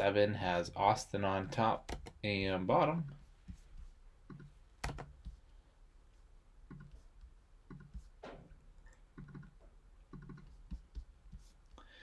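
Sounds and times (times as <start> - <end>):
computer mouse and keyboard clicks: 4.3 - 5.4, 6.7 - 8.2, 8.8 - 10.8.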